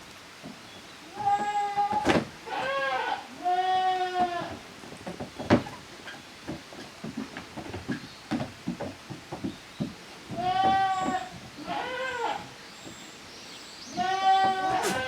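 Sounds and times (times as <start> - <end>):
young goat bleating: 1.1 - 4.5, 10.4 - 12.5, 13.9 - 15.0.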